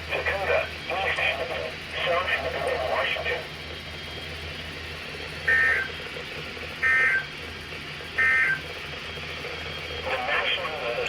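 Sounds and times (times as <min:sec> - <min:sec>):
steady low hum: 0:00.0 - 0:11.0
alert data tones: 0:05.5 - 0:05.9.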